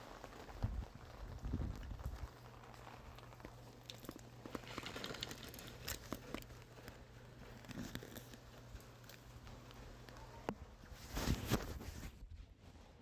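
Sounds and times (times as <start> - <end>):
rain falling: 0.0 - 5.9
faint low hum: 0.0 - 13.0.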